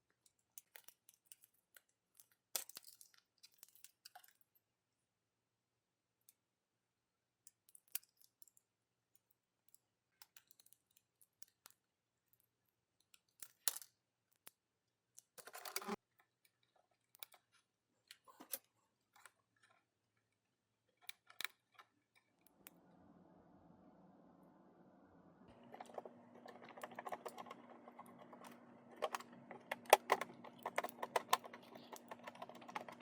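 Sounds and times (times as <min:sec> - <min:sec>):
plastic packaging rustling and clicking: 0:25.5 - 0:33.0.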